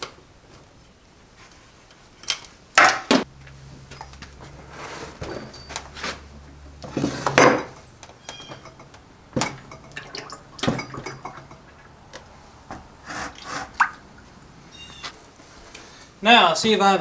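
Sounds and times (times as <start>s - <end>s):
metal tools clinking on work bench: 2.2s - 11.8s.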